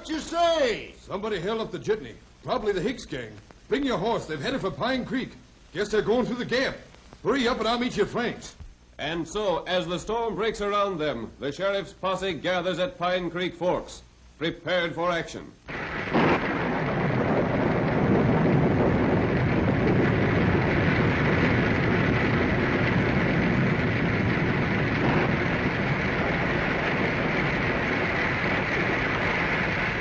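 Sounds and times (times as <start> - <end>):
loud rush of wind and rain: 15.7 - 30.0.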